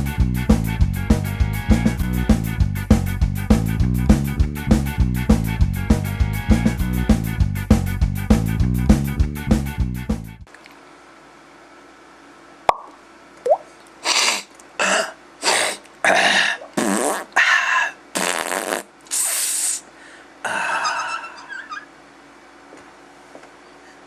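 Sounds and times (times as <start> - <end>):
person making fart noises: 13.5 - 17.4, 18.1 - 19.8
rising squeak: 20.8 - 21.9.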